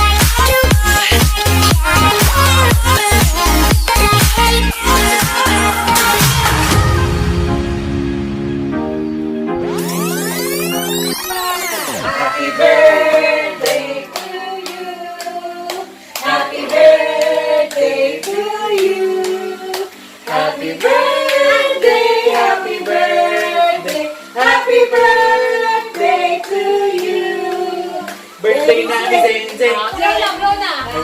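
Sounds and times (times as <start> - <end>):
voices singing together: 0.0 - 7.2, 11.0 - 31.0
hand claps: 13.6 - 21.5, 25.9 - 28.2.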